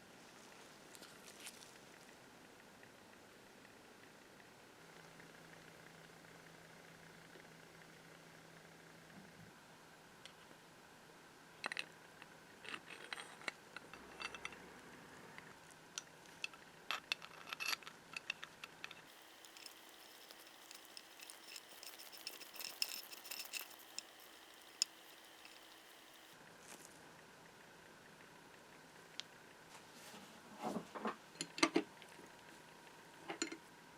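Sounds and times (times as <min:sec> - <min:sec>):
small metal parts clinking: 0:16.9 - 0:26.4.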